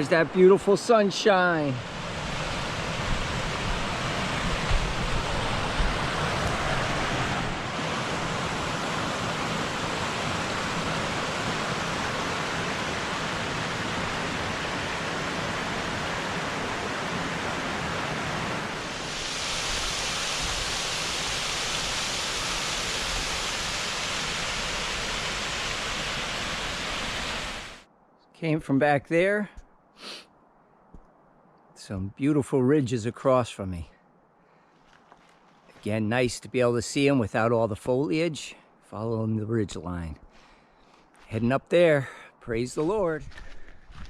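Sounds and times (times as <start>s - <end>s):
river rushing: 0.0s - 27.8s.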